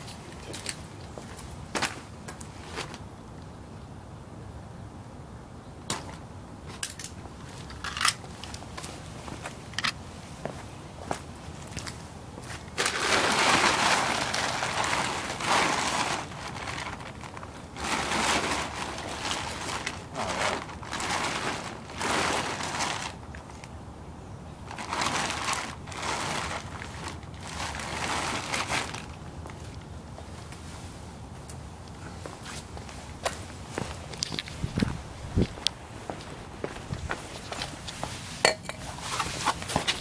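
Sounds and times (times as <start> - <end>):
plastic tarp rustling and crinkling: 11.4 - 23.7, 24.6 - 40.0.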